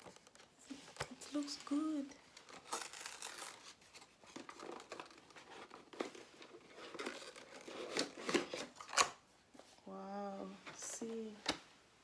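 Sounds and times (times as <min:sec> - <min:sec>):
packaging crinkling: 0:02.4 - 0:09.0.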